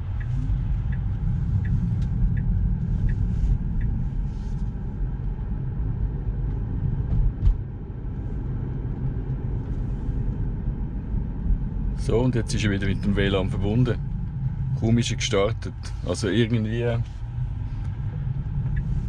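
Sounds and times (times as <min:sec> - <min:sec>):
turn signal ticking: 0:00.0 - 0:06.7, 0:16.5 - 0:19.0
car low rumble: 0:00.0 - 0:19.0.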